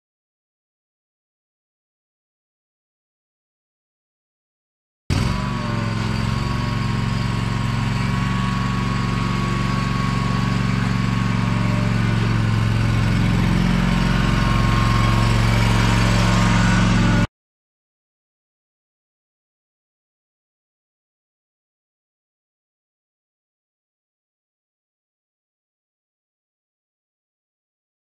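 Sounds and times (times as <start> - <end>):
engine running steadily: 5.1 - 17.3.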